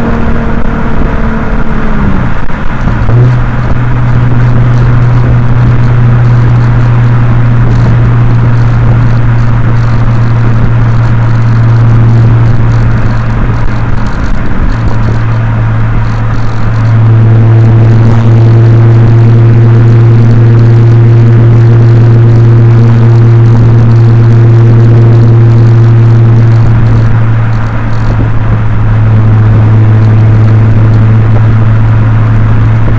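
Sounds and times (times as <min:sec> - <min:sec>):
car exhaust droning: 0:00.0 - 0:32.9
wind noise on microphone: 0:00.0 - 0:32.9.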